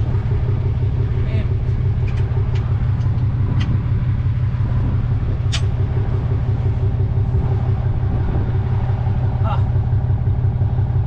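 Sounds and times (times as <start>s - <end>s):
truck engine idling: 0.0s - 11.0s.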